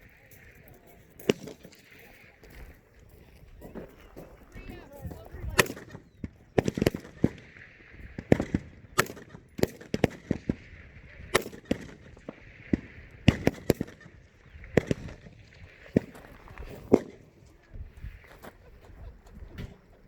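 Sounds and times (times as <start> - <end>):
rifle shots: 5.5 - 17.3.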